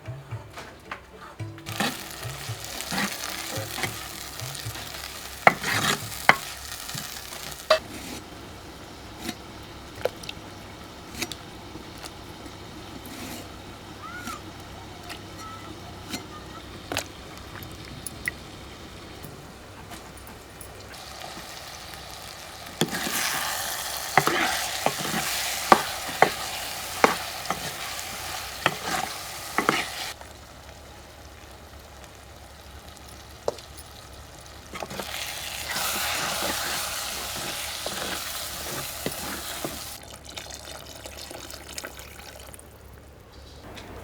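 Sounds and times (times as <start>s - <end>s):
utensil clinking against pan: 1.6s - 7.8s, 22.2s - 30.1s
food sizzling in a pan: 1.7s - 19.7s, 20.4s - 42.5s.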